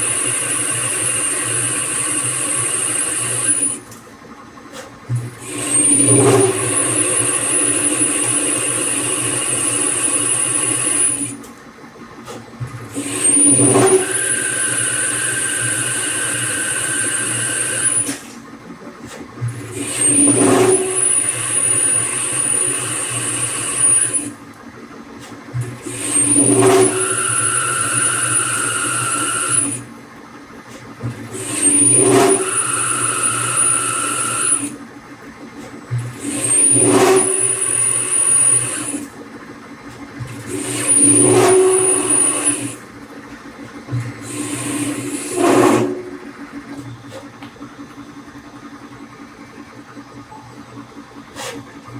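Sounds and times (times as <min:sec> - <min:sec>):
lathe cutting steel whine: 0:00.0 - 0:03.9, 0:05.5 - 0:11.4, 0:13.0 - 0:18.2, 0:19.8 - 0:24.4, 0:25.9 - 0:29.9, 0:31.3 - 0:34.8, 0:36.2 - 0:39.2, 0:40.5 - 0:43.0, 0:44.2 - 0:47.0.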